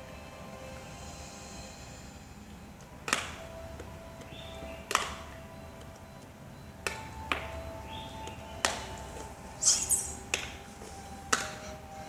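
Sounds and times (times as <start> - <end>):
quiet background music: 0.0 - 12.0
short burst of higher noise: 9.6 - 10.2.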